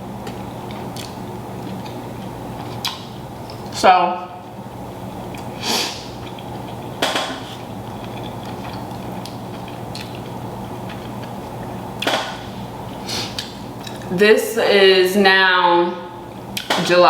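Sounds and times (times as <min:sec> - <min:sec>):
crackling rustling of eating: 0:00.2 - 0:03.8, 0:04.5 - 0:14.1.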